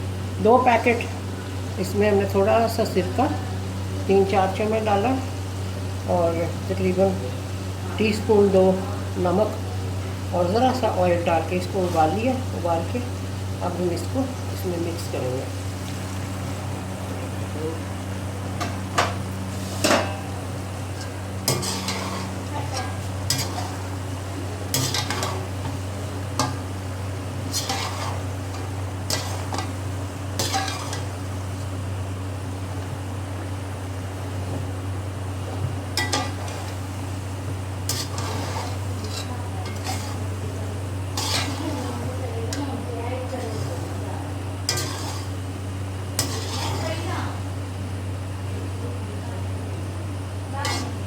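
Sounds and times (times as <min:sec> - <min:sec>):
light sizzle: 0:00.0 - 0:51.0
steady low hum: 0:00.0 - 0:51.0
spoon scraping a cooking pot: 0:21.5 - 0:23.8, 0:27.5 - 0:28.3, 0:37.9 - 0:40.3, 0:41.1 - 0:42.0, 0:44.7 - 0:45.4, 0:46.2 - 0:47.0, 0:50.6 - 0:51.0.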